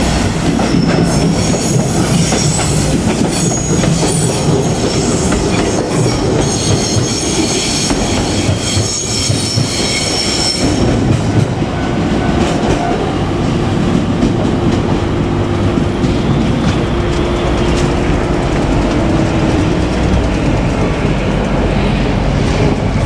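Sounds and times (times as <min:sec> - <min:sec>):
train wheels on rails: 0:00.0 - 0:23.0
wheel flange squeal: 0:00.2 - 0:10.9, 0:15.8 - 0:23.0.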